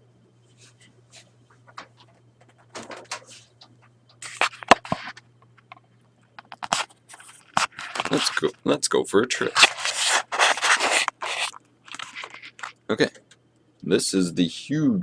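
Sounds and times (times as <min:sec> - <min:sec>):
low electrical hum: 0:00.0 - 0:15.0
objects knocking and rustling: 0:00.8 - 0:08.5
objects scraping: 0:09.5 - 0:12.7.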